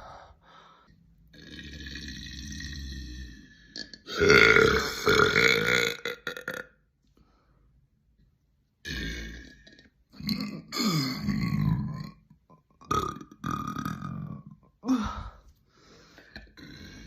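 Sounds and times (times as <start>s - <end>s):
women burping: 10.2s - 11.6s.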